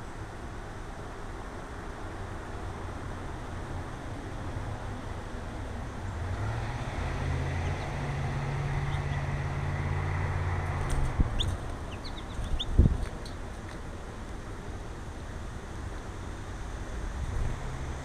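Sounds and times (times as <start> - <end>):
low motor hum: 6.0 - 14.1
small birds chirping: 7.0 - 9.4, 10.7 - 13.8.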